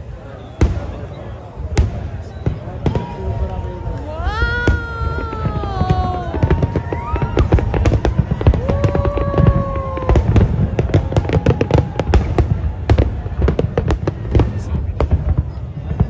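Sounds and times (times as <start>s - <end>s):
fireworks bangs and crackles: 0.0s - 16.0s
voice-like whoops: 2.8s - 12.4s.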